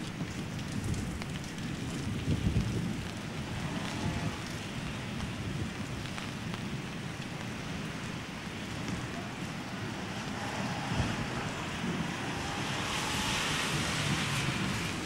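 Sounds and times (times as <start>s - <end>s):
heavy rain hissing: 1.7s - 15.0s
low fluctuating rumble: 7.8s - 15.0s.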